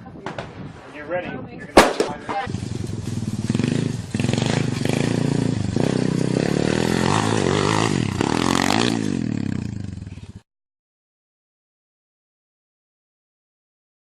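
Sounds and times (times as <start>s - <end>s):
engine revving: 2.4s - 10.3s.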